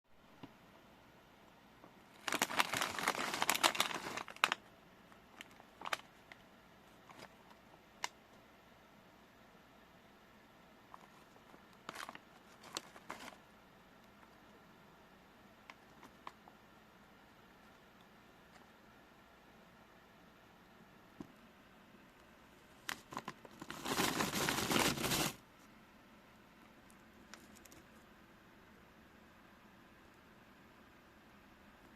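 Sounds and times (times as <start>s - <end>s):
foil chip bag crinkling: 2.1s - 4.6s, 11.0s - 13.4s, 22.8s - 25.4s.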